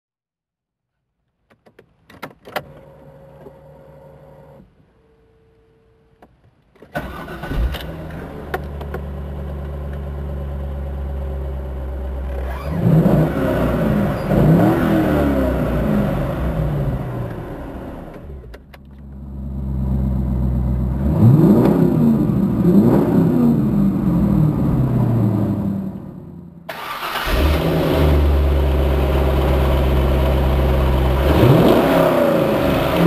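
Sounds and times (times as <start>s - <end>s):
car engine revving: 7.0s - 18.4s, 19.0s - 33.0s.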